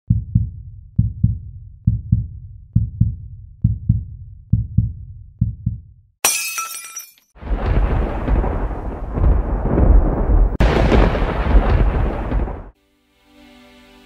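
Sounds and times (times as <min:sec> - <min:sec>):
heartbeat thumps: 0:00.1 - 0:06.0, 0:07.5 - 0:12.6.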